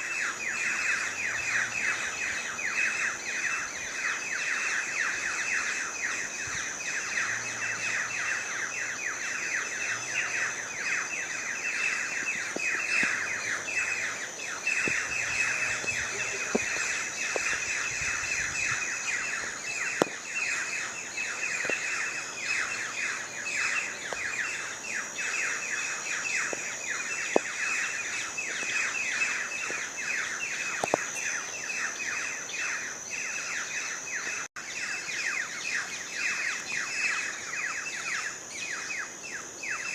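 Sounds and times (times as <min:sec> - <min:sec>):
chorus of birds chirping: 0:00.0 - 0:39.9
steady high-pitched tone: 0:00.0 - 0:39.9.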